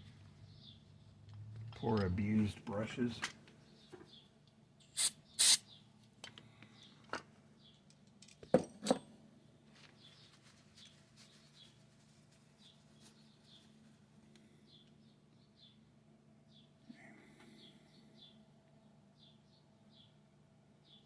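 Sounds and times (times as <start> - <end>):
short hissing bursts: 4.9 - 5.6.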